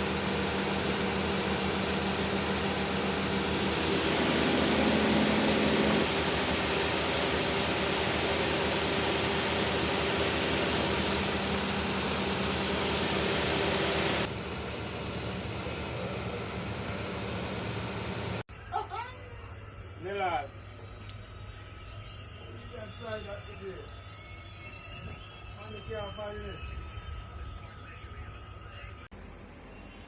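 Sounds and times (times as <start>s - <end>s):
car engine idling: 0.0s - 18.4s
rising hum: 0.0s - 18.4s.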